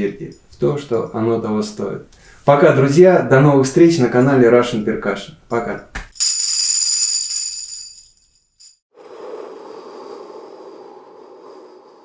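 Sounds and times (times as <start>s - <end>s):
tambourine jingles: 6.1s - 8.8s.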